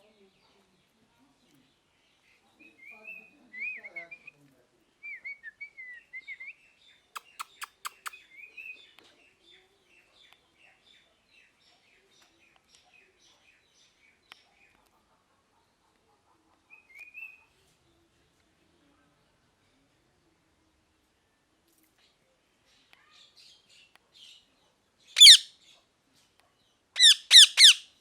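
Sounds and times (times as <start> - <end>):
parrot chirping and warbling: 7.2 - 8.1, 25.2 - 25.5, 27.0 - 27.9.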